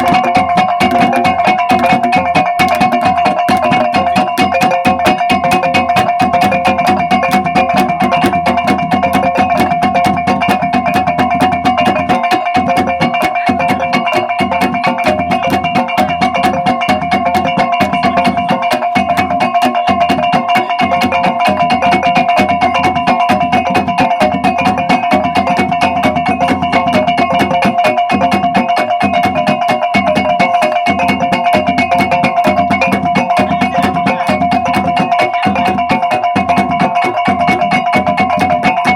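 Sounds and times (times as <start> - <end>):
drum strokes: 0.0 - 38.9.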